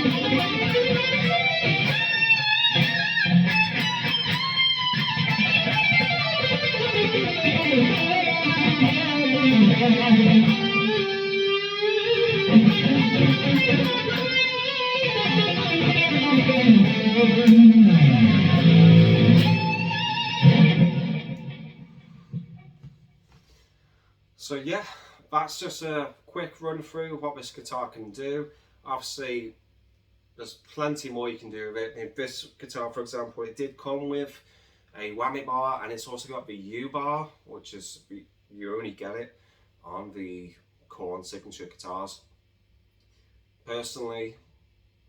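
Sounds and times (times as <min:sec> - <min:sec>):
electric guitar lead with vibrato: 0:00.0 - 0:22.7.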